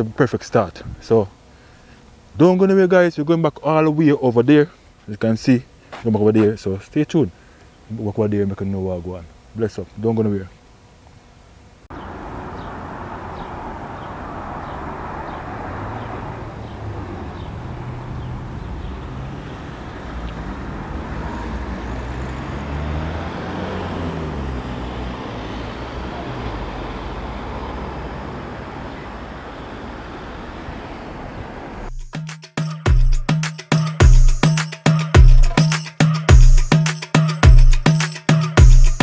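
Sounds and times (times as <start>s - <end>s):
road traffic drone: 11.1s - 31.9s.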